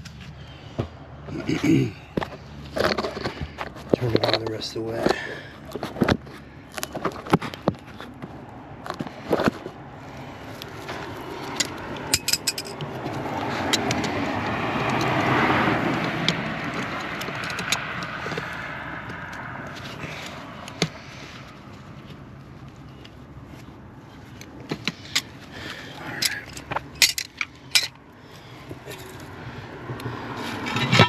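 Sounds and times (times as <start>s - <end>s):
handling clicks and knocks: 0.8s - 9.8s, 10.6s - 15.2s, 15.8s - 21.0s, 22.0s - 28.0s
vehicle passing: 7.9s - 31.0s.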